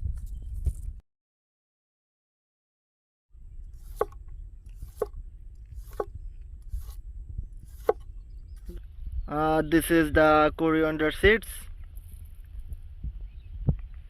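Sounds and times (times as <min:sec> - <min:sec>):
steady low rumble: 0:03.4 - 0:10.6.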